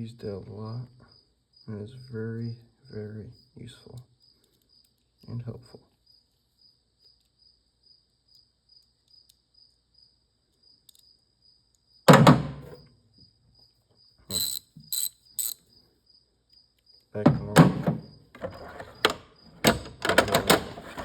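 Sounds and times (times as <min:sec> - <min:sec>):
cricket chirping: 0:00.0 - 0:20.2
loud thunk: 0:12.1 - 0:12.7
sharp clicks: 0:14.3 - 0:15.6.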